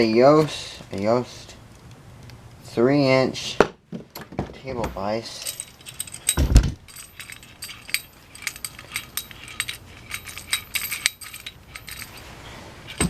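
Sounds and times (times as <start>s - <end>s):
metal vise parts clinking: 4.8s - 13.0s
thump: 6.4s - 6.8s.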